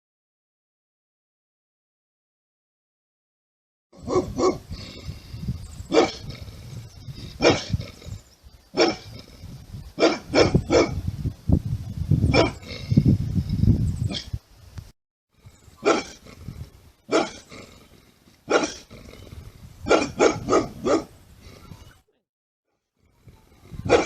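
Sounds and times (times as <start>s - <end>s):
dog barking: 4.0s - 4.6s, 5.9s - 6.3s, 7.4s - 7.8s, 8.8s - 9.0s, 10.0s - 11.0s, 12.3s - 12.6s, 15.8s - 16.2s, 17.1s - 17.4s, 18.5s - 18.8s, 19.9s - 21.1s.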